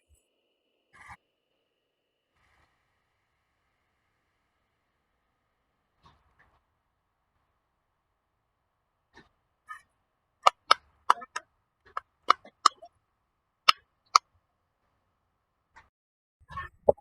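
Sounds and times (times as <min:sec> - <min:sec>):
plastic fidget toy clicking: 0:10.5 - 0:12.9.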